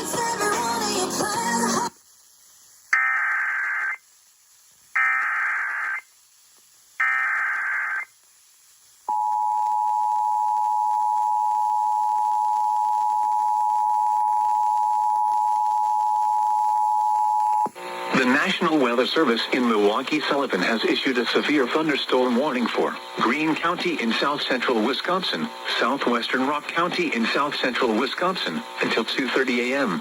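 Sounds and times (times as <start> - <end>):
digital data bursts: 2.9 - 4.0, 5.0 - 6.0, 7.0 - 8.1, 18.1 - 30.0.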